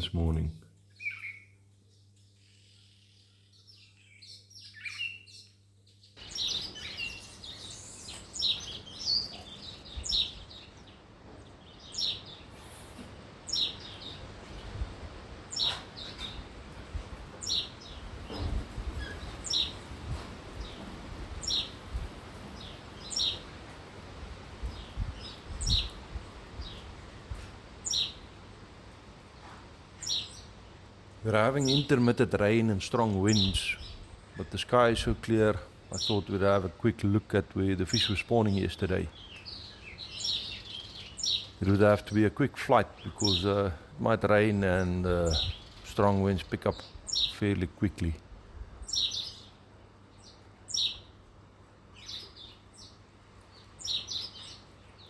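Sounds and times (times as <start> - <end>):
small birds chirping: 0.0 - 55.0
wind rumble on microphone: 14.2 - 27.6.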